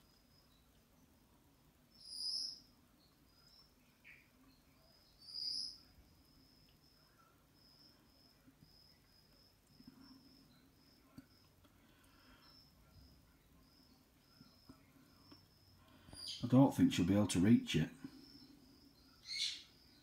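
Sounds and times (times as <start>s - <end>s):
cricket chirping: 0.0s - 20.0s.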